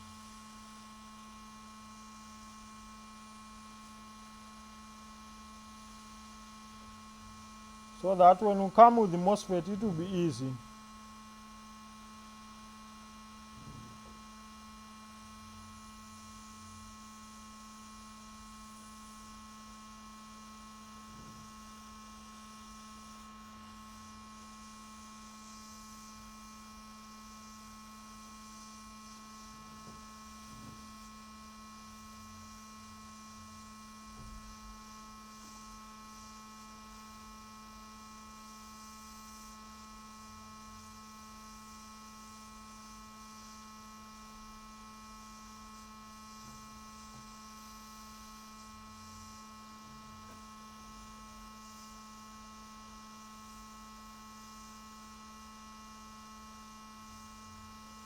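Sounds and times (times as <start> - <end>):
electrical hum: 8.0 - 10.6.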